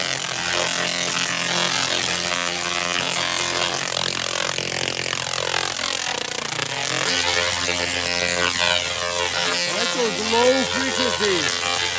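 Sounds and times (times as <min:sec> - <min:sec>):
tesla coil buzzing: 0:00.0 - 0:11.9.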